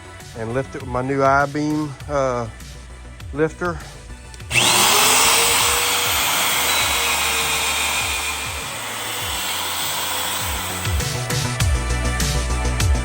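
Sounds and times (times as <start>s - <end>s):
power tool cutting steel: 4.4s - 11.7s.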